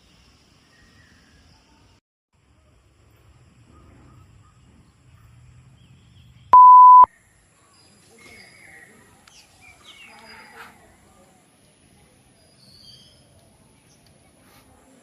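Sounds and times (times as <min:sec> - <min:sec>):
electronic beep: 0:06.6 - 0:07.1.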